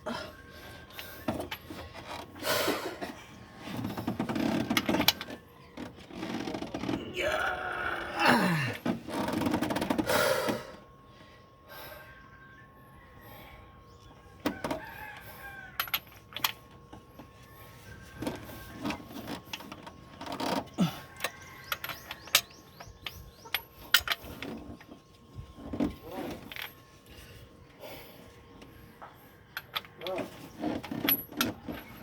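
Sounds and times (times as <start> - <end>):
rooster crowing: 14.5 - 15.9.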